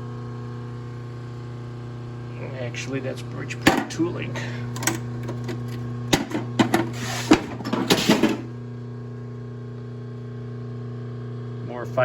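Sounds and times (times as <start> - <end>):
lathe motor hum: 1.0 - 8.8
tooling knocks and clatter: 4.8 - 8.5.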